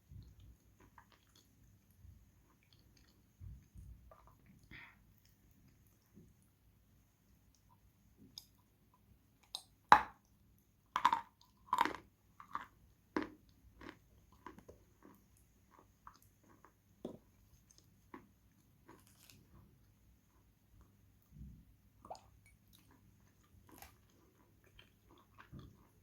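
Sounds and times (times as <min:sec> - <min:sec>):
person crunching and chewing chalk: 0:11.0 - 0:19.6.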